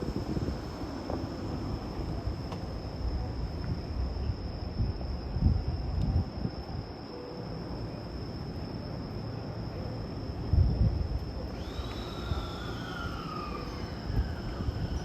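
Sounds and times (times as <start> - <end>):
insect-like trill: 11.4 - 15.0.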